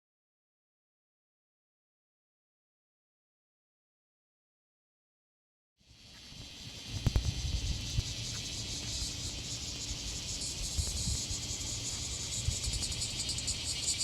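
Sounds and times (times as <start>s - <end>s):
insects chirping: 5.8s - 14.0s.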